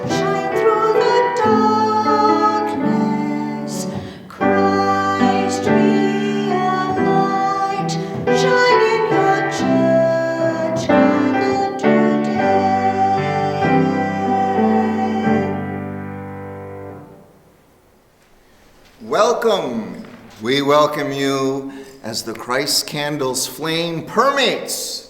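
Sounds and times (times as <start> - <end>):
piano playing slow chords: 0.0 - 17.6.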